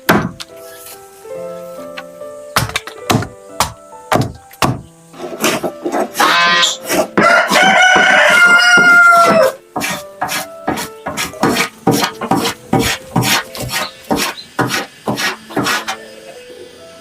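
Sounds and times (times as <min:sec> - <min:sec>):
background music with ticking beat: 0:01.9 - 0:04.8, 0:07.0 - 0:15.9
rooster crowing: 0:06.2 - 0:09.6.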